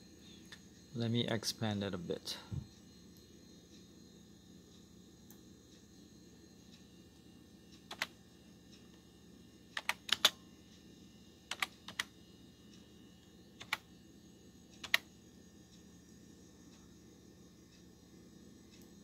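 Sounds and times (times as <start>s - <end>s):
computer keyboard typing: 7.9s - 8.2s, 9.8s - 10.4s, 11.5s - 12.1s, 13.6s - 13.9s, 14.8s - 15.1s.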